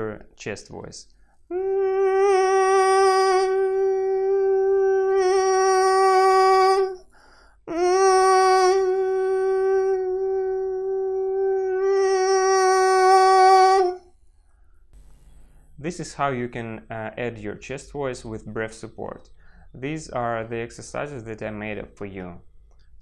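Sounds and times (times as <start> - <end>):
person breathing: 1.2 - 1.5, 7.0 - 7.7, 19.3 - 19.8
man singing buzzing held tone: 1.5 - 14.2.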